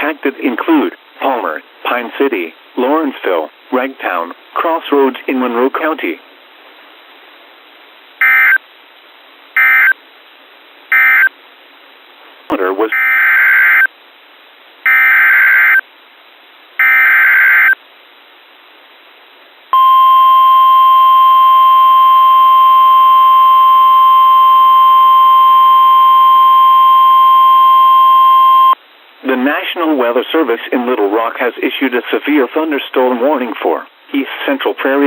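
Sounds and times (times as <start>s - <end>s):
steady warning alarm tone: 19.8s - 28.8s.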